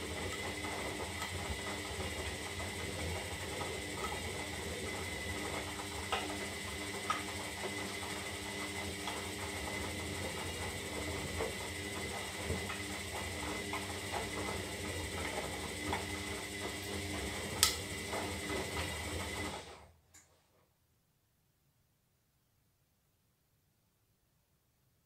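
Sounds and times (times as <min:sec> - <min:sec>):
washing machine motor hum: 0:00.0 - 0:20.0.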